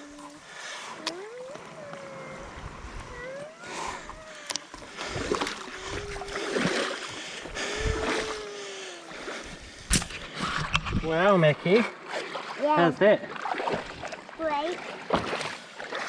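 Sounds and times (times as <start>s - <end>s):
faint gliding tones: 0.0s - 10.5s
paddle splashing through water: 2.4s - 10.8s, 11.6s - 16.0s.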